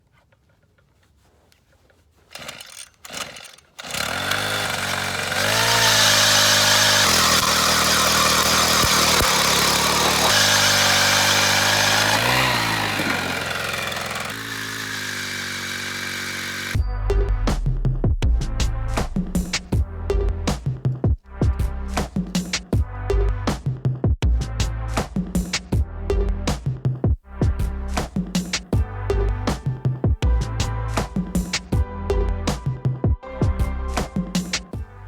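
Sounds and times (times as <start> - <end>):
small gas engine running: 2.3 - 16.8.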